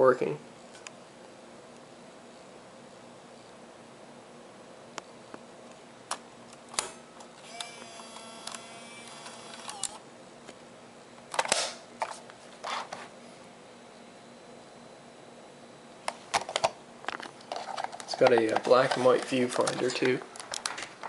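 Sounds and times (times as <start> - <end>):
camcorder clicks: 6.1 - 10.0
short mechanical whine: 6.8 - 10.0.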